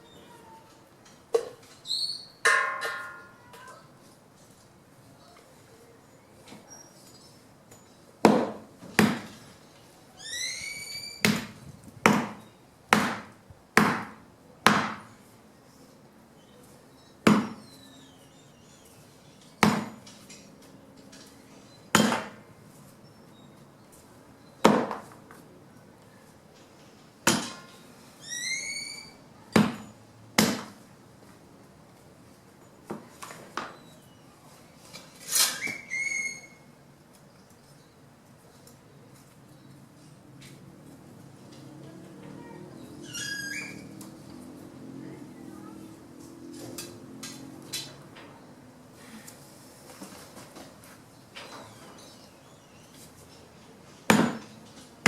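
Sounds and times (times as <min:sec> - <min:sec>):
axe chopping wood: 0:08.2 - 0:09.4, 0:11.2 - 0:15.1, 0:17.3 - 0:17.6, 0:19.6 - 0:20.0, 0:21.9 - 0:22.4, 0:24.6 - 0:25.0, 0:27.3 - 0:27.6, 0:29.6 - 0:30.8, 0:54.1 - 0:54.5.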